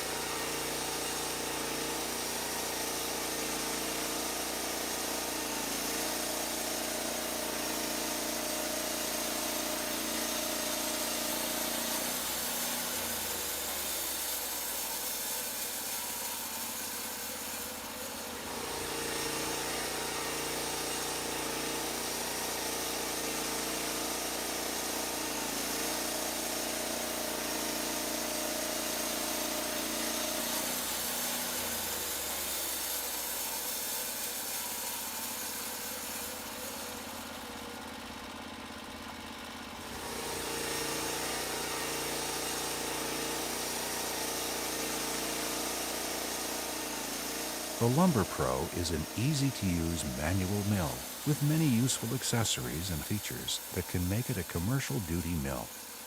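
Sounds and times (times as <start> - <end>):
sawmill engine running: 46.0 - 56.0.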